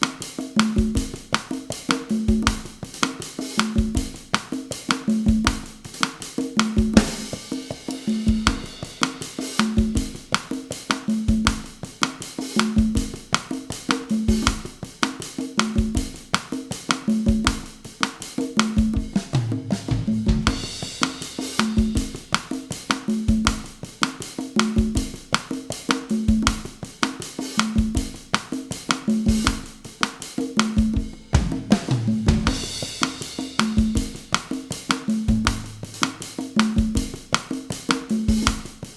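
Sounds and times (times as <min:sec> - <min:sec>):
bossa nova drum groove: 0:00.0 - 0:38.9
cymbal wash with deep drum hit: 0:35.3 - 0:36.3.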